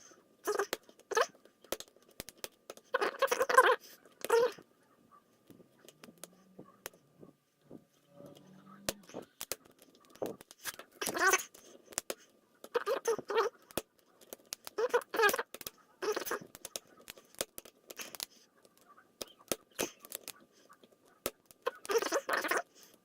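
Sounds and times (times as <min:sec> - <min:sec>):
short voiced sounds: 0:00.4 - 0:01.3, 0:02.9 - 0:04.6, 0:11.0 - 0:11.6, 0:12.7 - 0:13.5, 0:16.0 - 0:16.5, 0:21.6 - 0:22.7.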